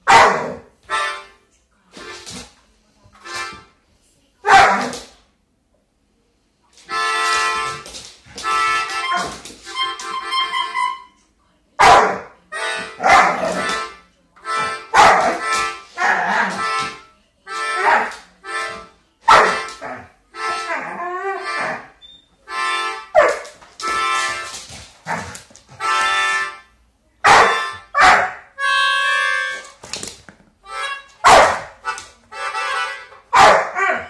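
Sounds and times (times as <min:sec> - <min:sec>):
reedy instrument playing held notes: 0:06.9 - 0:11.1, 0:20.3 - 0:23.2, 0:23.8 - 0:24.5, 0:28.6 - 0:29.7, 0:30.6 - 0:31.2, 0:31.8 - 0:33.3.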